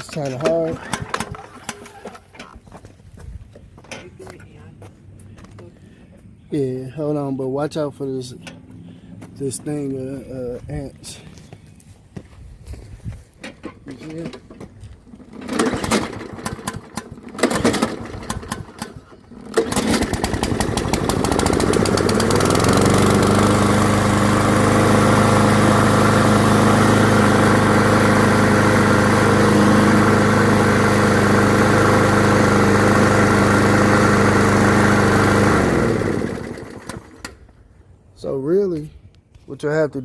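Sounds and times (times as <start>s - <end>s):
lawnmower engine starting and running: 0.0s - 2.6s, 13.3s - 37.8s.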